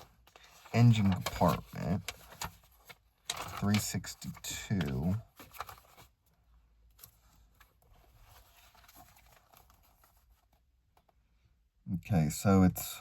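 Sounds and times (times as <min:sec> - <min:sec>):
paper pages rustling: 0:00.0 - 0:06.2, 0:06.9 - 0:10.7.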